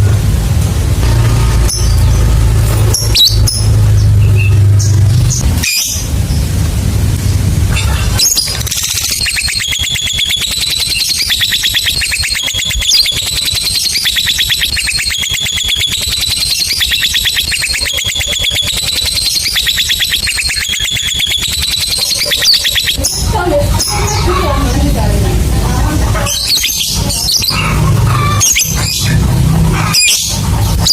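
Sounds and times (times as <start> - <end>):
bird chattering trill: 7.7 - 30.9.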